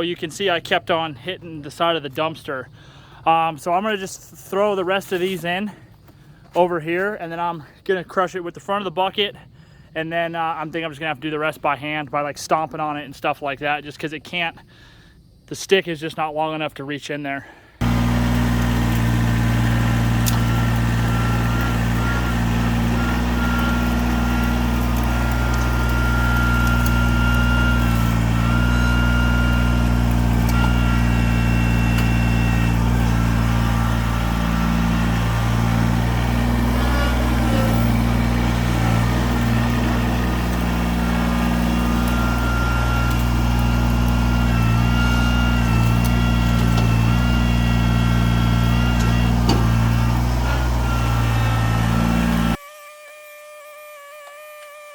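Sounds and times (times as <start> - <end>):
tractor diesel engine running: 17.8 - 52.6.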